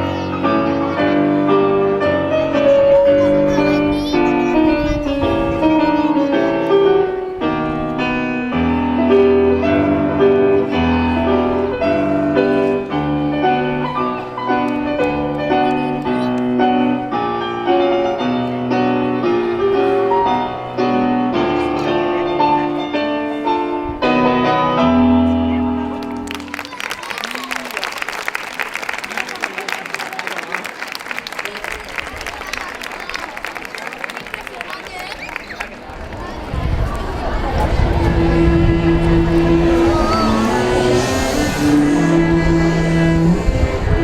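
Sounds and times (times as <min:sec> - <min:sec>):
piano music: 0:00.0 - 0:26.6, 0:37.8 - 0:44.0.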